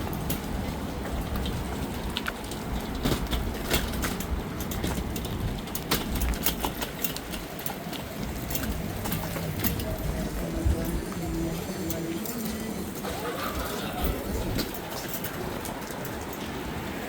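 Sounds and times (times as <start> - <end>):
low traffic rumble: 0.0 - 17.0.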